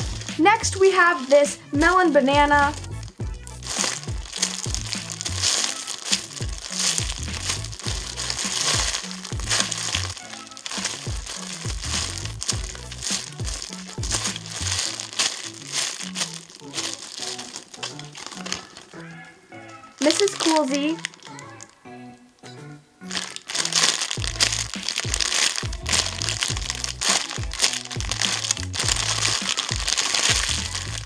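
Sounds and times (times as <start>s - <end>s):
background music with bass line: 0.0s - 31.0s
foam toy being squeezed: 2.6s - 19.2s, 23.1s - 31.0s.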